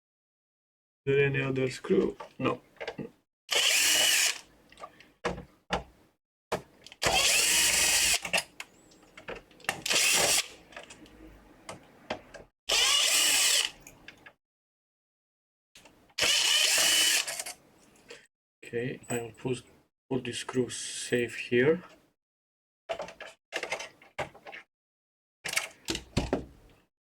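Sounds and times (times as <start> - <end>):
electric screwdriver whirring: 3.5 - 4.4, 7.0 - 8.2, 9.8 - 10.6, 12.7 - 13.8, 16.2 - 17.4.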